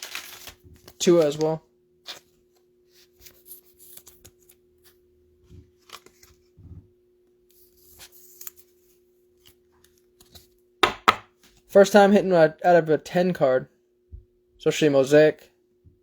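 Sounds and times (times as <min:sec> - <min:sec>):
knocks on table: 0:10.8 - 0:11.3.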